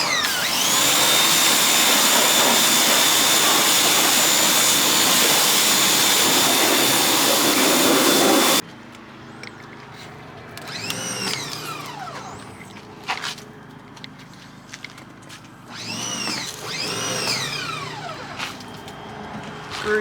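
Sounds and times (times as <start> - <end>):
pressure washer spraying: 0.0 - 8.6
short rising and falling whine: 0.0 - 8.6.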